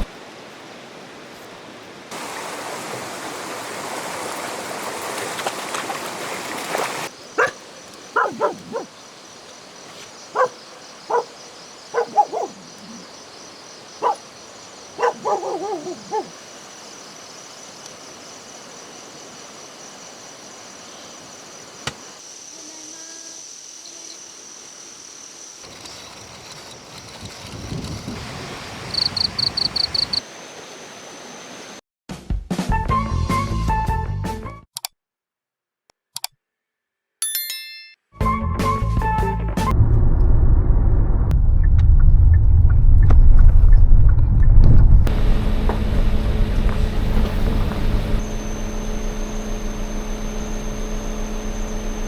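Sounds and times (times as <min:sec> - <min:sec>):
rushing water: 0:00.0 - 0:12.2, 0:28.0 - 0:31.8
high insect buzz: 0:07.1 - 0:26.9, 0:28.8 - 0:31.8
dog barking: 0:07.4 - 0:07.6, 0:08.2 - 0:08.9, 0:10.3 - 0:13.0, 0:14.0 - 0:14.3, 0:15.0 - 0:16.4.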